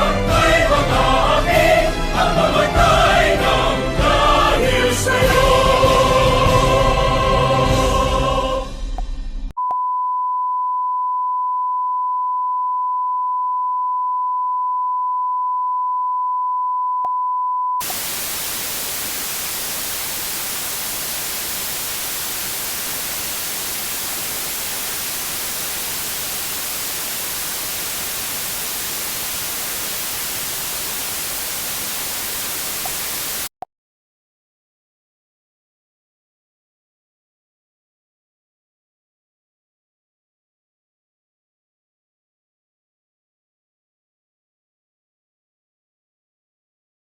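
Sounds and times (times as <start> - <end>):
choir singing: 0.0 - 8.7
steady test tone: 17.8 - 33.5
television static hiss: 17.8 - 33.5.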